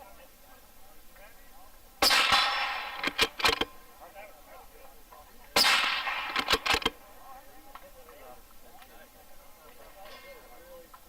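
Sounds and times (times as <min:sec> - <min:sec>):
rifle shots: 0:02.0 - 0:03.8, 0:05.6 - 0:07.0
short sharp cracks: 0:02.0 - 0:03.8, 0:05.6 - 0:07.1.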